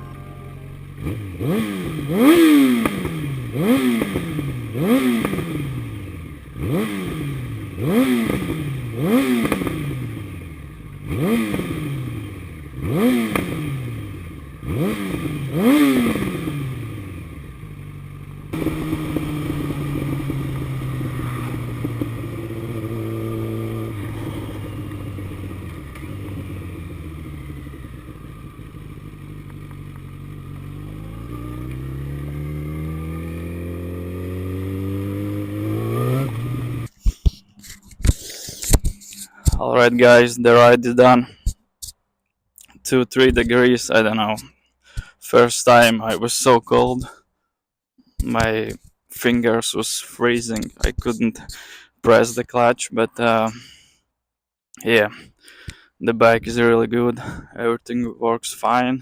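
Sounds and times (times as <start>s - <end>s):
motorcycle engine revving: 0.0s - 41.6s, 48.2s - 52.7s.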